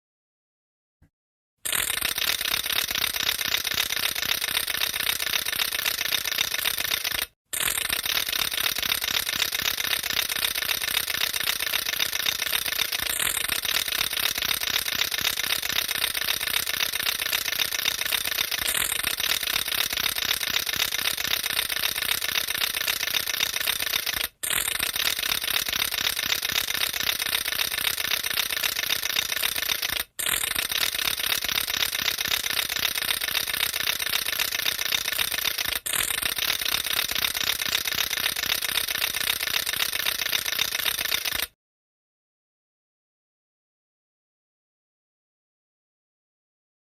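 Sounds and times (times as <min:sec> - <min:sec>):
wooden ratchet rattle clattering: 0:08.0 - 0:41.5.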